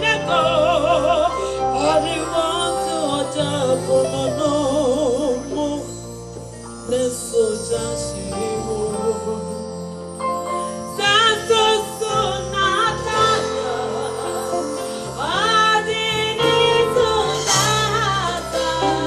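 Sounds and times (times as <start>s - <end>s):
woman singing with vocal runs: 0.0s - 6.0s, 11.0s - 19.0s
gospel band with bass: 0.0s - 19.0s.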